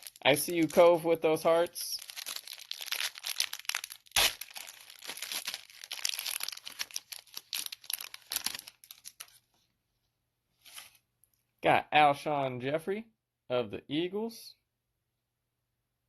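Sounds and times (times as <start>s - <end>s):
foil wrapper crinkling and tearing: 0.0s - 9.4s.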